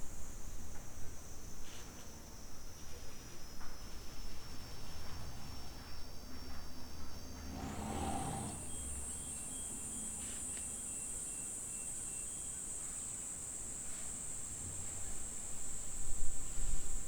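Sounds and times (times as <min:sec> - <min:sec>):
insects buzzing: 0:05.5 - 0:17.0.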